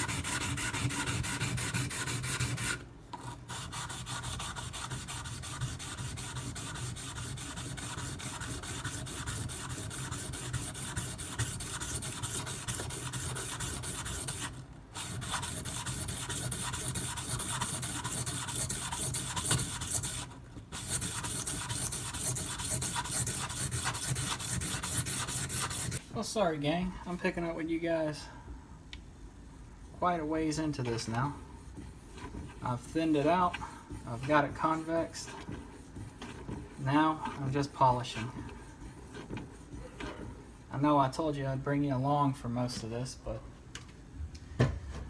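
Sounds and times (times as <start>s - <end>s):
knife scraping on whetstone: 0.0s - 26.0s, 30.9s - 40.5s.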